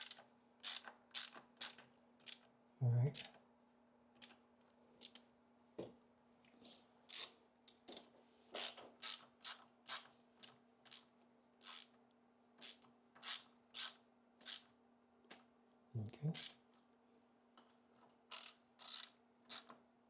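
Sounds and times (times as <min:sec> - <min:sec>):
ratchet wrench clicking: 0:00.0 - 0:02.4, 0:03.2 - 0:03.4, 0:05.0 - 0:05.2, 0:07.1 - 0:07.3, 0:08.6 - 0:11.9, 0:12.6 - 0:14.7, 0:16.4 - 0:16.6, 0:18.3 - 0:19.7.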